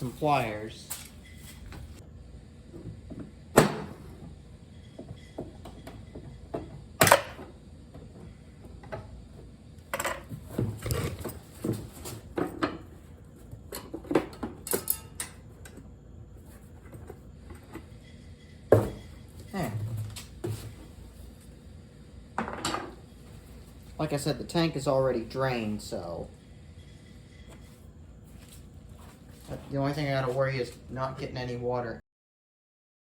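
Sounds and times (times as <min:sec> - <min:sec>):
pliers and metal parts clanking: 0:14.6 - 0:15.4.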